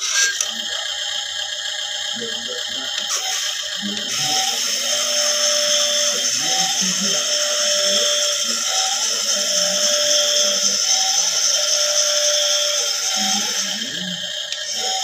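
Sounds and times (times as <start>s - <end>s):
toy motor and gears whining: 0.0s - 15.0s.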